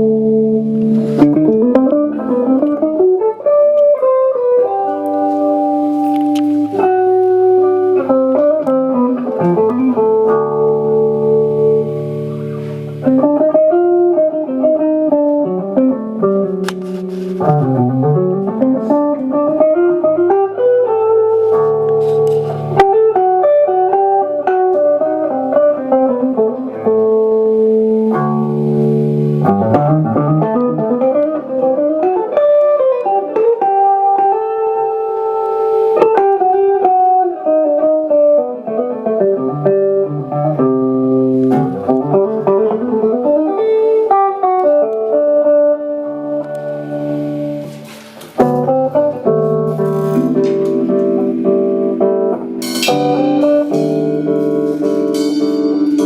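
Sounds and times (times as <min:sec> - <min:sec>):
guitar melody: 0:00.0 - 0:56.0
bass notes: 0:04.7 - 0:20.3, 0:26.2 - 0:31.7, 0:46.1 - 0:56.0
cymbal stroke: 0:52.6 - 0:56.0.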